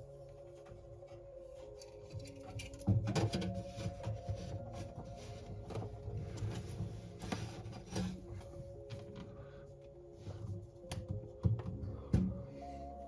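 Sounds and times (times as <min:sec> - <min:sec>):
cables rustling: 0:00.0 - 0:13.0.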